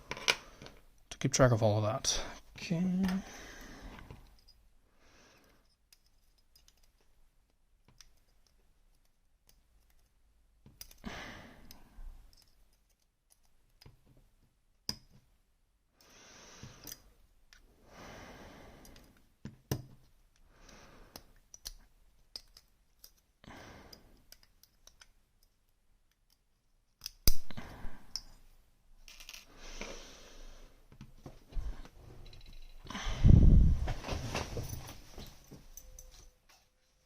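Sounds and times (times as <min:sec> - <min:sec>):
rustling handling noise: 0:33.6 - 0:37.0.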